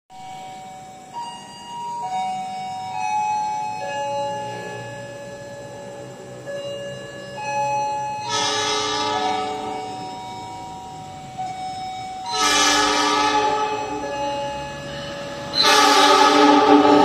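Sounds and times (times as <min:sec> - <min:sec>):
locomotive horn blasts: 0:08.2 - 0:10.8, 0:12.2 - 0:17.0.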